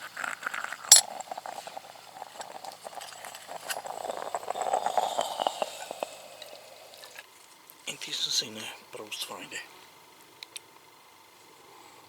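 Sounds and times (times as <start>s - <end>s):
clicks and crackles: 0.0s - 7.8s
gas stove hissing: 0.0s - 12.0s.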